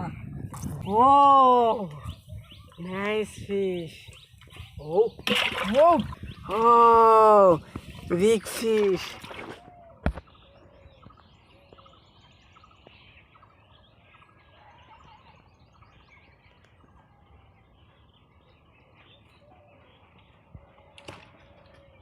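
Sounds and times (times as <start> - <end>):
small birds chirping: 0.0 - 22.0.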